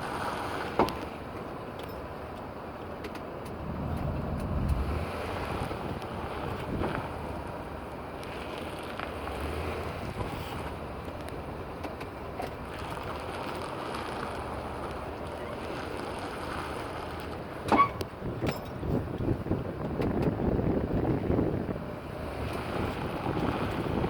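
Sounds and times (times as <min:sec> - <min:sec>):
vehicle noise: 0:00.0 - 0:24.0
wind on microphone: 0:03.6 - 0:10.9, 0:18.0 - 0:24.0.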